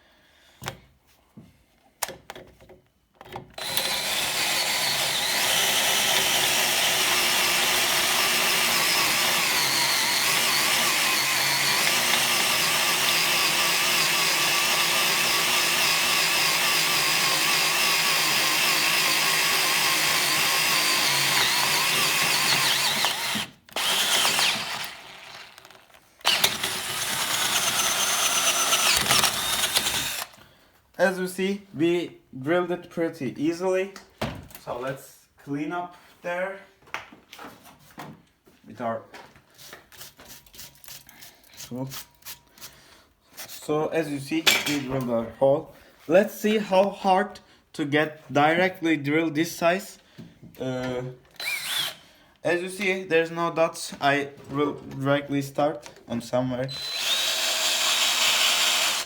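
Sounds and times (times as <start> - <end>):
electric drill boring into steel: 3.6 - 30.4, 51.4 - 52.0, 56.7 - 59.0.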